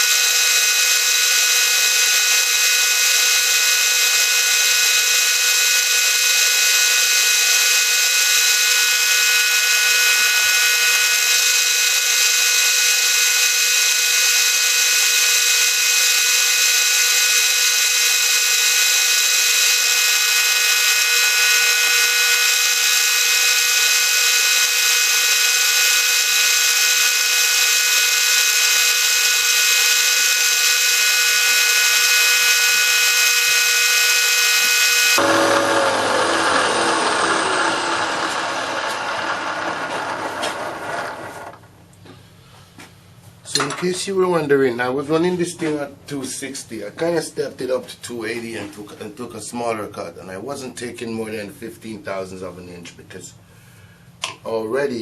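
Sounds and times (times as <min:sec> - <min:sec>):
milling machine whine: 0:00.0 - 0:41.6.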